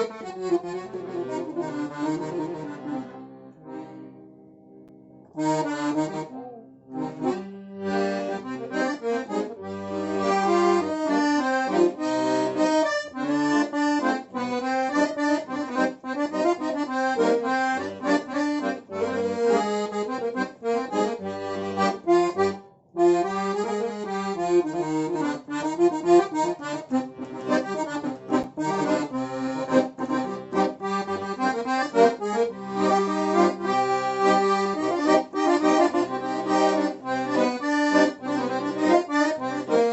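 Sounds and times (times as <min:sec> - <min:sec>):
accordion playing a tune: 0:00.0 - 0:39.9.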